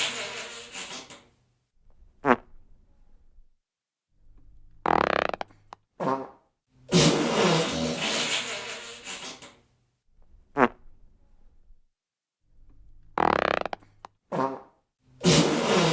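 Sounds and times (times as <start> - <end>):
fart sound effects: 0.0 - 1.1, 2.2 - 2.5, 4.8 - 9.5, 10.5 - 10.8, 13.2 - 15.9.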